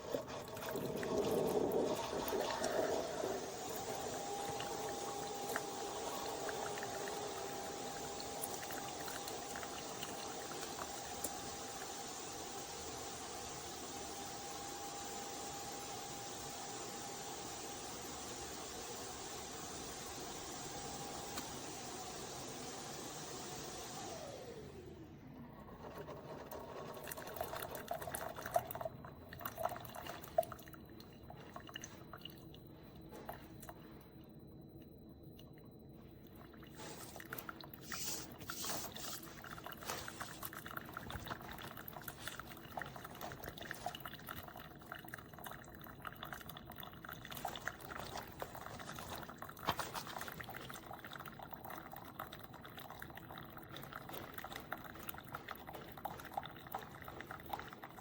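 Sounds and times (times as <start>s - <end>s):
water gurgling: 0.0s - 12.0s
coffee pouring into cup: 0.0s - 14.6s, 25.4s - 32.6s, 36.2s - 58.0s.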